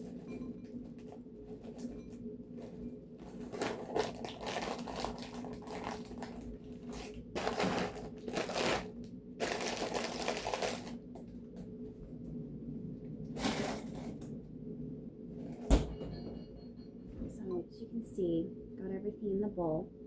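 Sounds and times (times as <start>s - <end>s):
frozen vegetables clattering into bowl: 0.0s - 11.3s
plastic bag crinkling: 0.0s - 11.5s.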